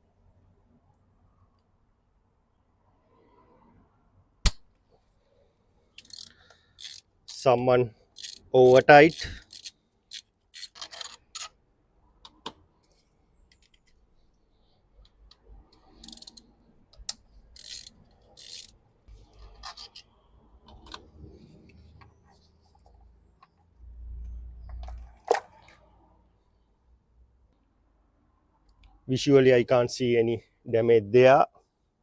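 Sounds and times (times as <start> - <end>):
metallic clicks and clinks of tools: 6.0 - 7.4, 8.2 - 11.5, 15.8 - 16.5, 17.1 - 18.8.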